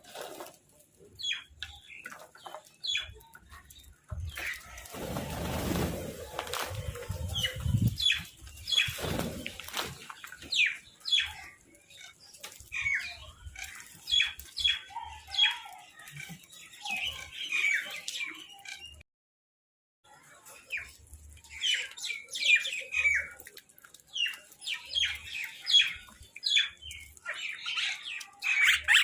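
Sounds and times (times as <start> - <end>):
wings flapping and rustling: 0.0 - 1.1, 4.1 - 11.3
birds squawking: 27.3 - 29.0.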